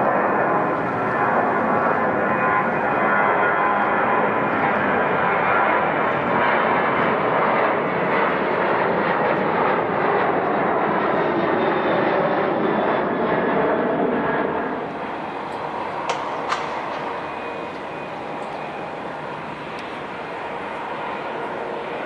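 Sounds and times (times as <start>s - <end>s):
jet engines roaring: 0.0s - 22.0s.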